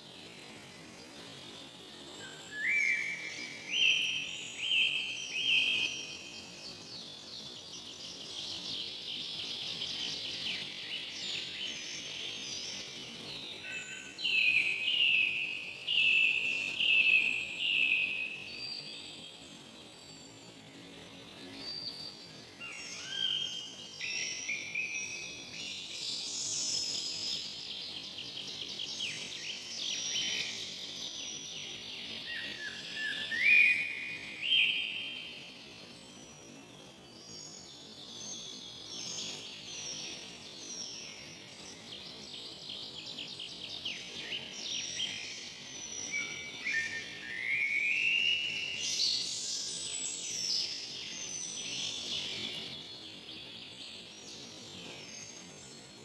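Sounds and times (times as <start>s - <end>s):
songbirds chirping: 0.0s - 56.0s.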